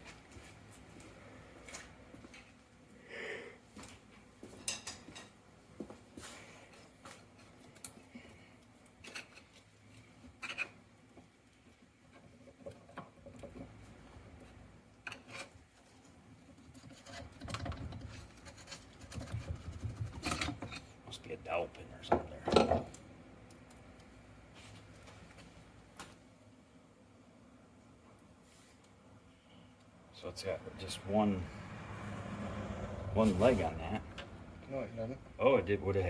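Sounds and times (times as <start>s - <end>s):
low rumble of parts being handled: 3.8s - 31.0s.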